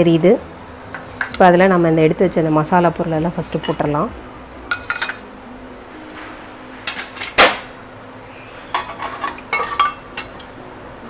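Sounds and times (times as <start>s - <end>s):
metal utensils clinking: 0.8s - 5.4s, 6.8s - 7.8s, 8.7s - 10.9s
loud metal clank: 6.2s - 7.8s.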